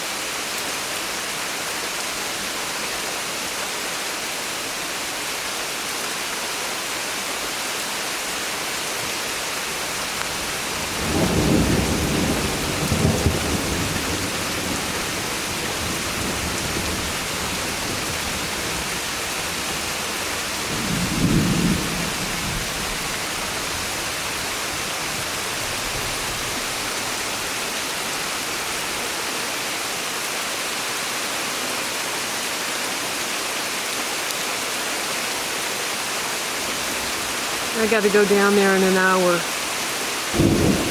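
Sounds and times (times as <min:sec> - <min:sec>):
steady rain falling: 0:00.0 - 0:40.9
low rumble of thunder: 0:10.8 - 0:18.4, 0:20.6 - 0:23.9, 0:40.4 - 0:40.9.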